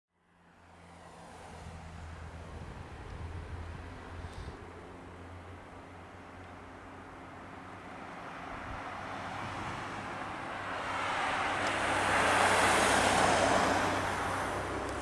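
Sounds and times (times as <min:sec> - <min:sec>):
car driving past: 0:07.3 - 0:15.0.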